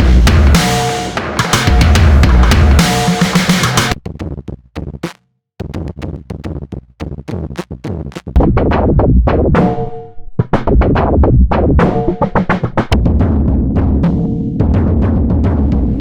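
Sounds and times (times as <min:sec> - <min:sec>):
distorted synth: 0:00.0 - 0:04.0
electronic drum machine beat: 0:00.0 - 0:09.7.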